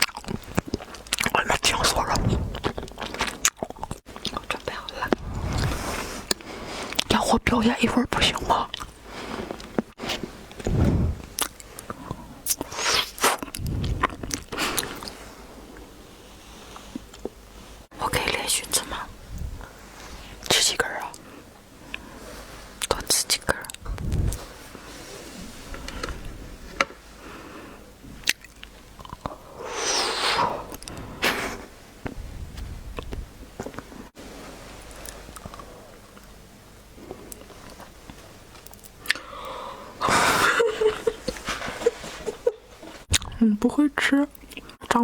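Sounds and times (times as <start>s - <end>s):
person chewing crunchy candy: 0.0s - 7.1s.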